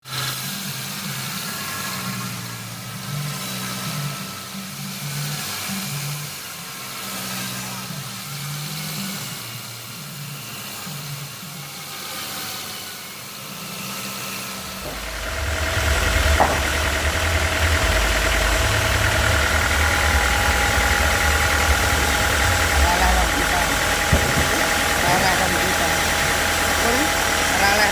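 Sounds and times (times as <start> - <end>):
engine running: 13.5 - 27.9.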